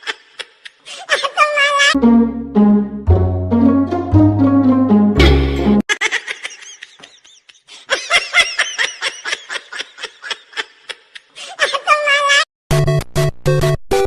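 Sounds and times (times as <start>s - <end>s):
person laughing in high bursts: 5.9s - 12.4s.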